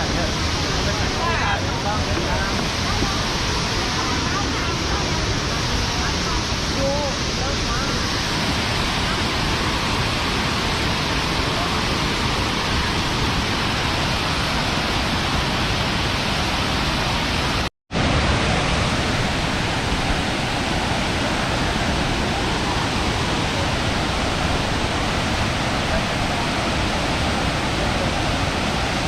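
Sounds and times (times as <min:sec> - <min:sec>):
waterfall rushing: 0:00.0 - 0:29.0.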